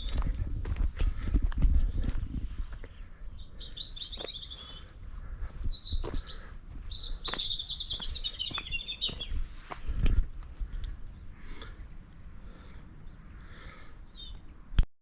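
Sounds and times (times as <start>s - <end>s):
songbird warbling: 3.3s - 9.4s.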